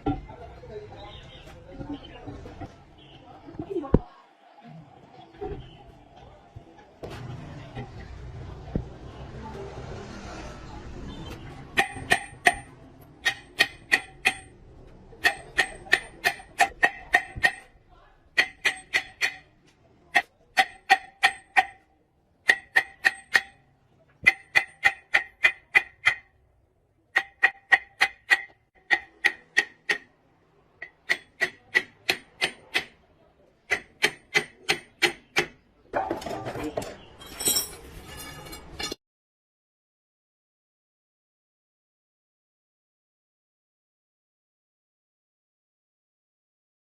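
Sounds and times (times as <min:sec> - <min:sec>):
hammer striking steel: 0:11.7 - 0:14.6, 0:15.2 - 0:17.7, 0:18.4 - 0:19.5, 0:20.1 - 0:23.6, 0:24.2 - 0:26.3, 0:27.1 - 0:30.2, 0:30.8 - 0:33.0, 0:33.7 - 0:35.6.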